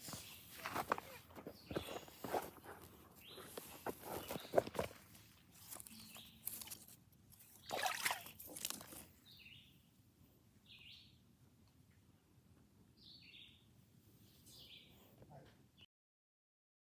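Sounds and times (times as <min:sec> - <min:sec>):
rustling and trickling: 0:00.0 - 0:09.2.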